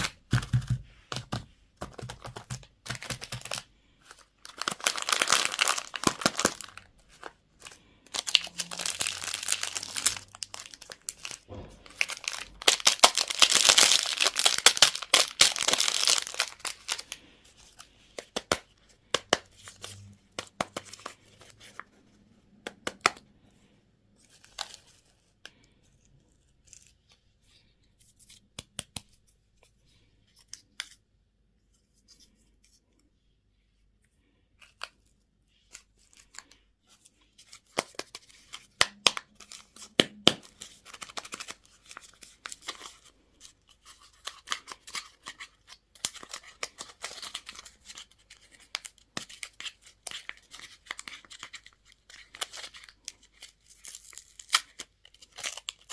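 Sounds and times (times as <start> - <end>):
plastic packaging crinkling: 1.9 - 17.2.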